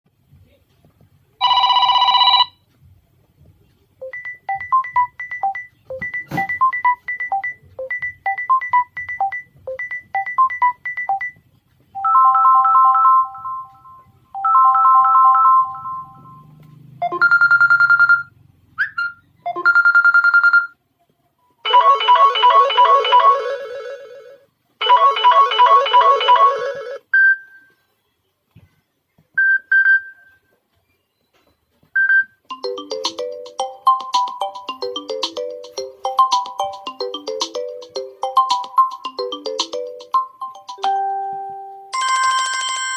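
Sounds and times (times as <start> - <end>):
electronic ringtone melodies: 4.0 - 11.4, 12.0 - 20.8, 21.6 - 27.4, 32.5 - 42.9.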